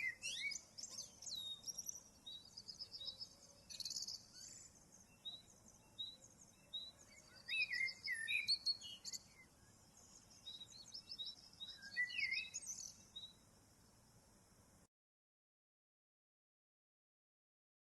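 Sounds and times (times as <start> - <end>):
faint high bird chirping: 0.0 - 14.0.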